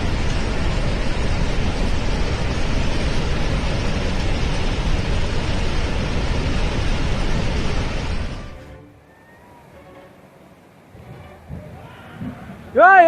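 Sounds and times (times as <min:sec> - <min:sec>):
storm rushing noise: 0:00.0 - 0:09.0.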